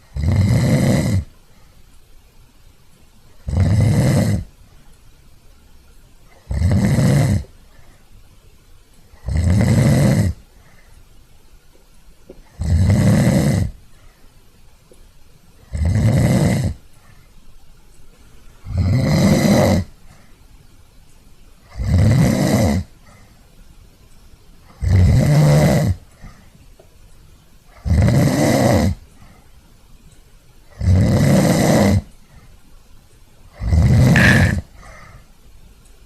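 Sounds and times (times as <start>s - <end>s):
person snoring: 0.2s - 1.3s, 3.5s - 4.5s, 6.5s - 7.4s, 9.2s - 10.4s, 12.6s - 13.7s, 18.7s - 19.9s, 33.6s - 34.7s.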